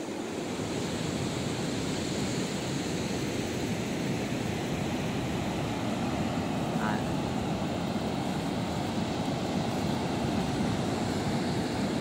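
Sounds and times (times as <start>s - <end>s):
surf from waves breaking: 0.0s - 12.0s.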